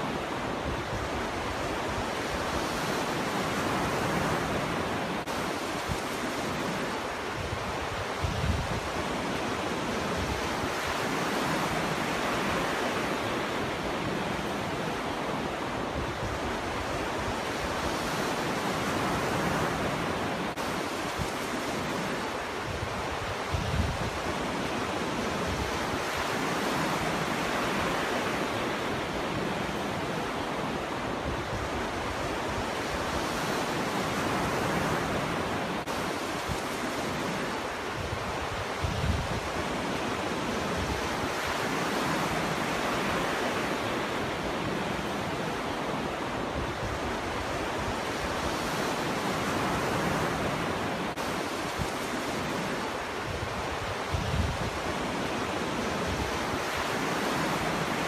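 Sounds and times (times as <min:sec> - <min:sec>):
surf breaking on shore: 0:00.0 - 0:58.0
wind buffeting microphone: 0:07.1 - 0:12.5, 0:22.4 - 0:27.8, 0:31.1 - 0:43.0, 0:46.4 - 0:58.0.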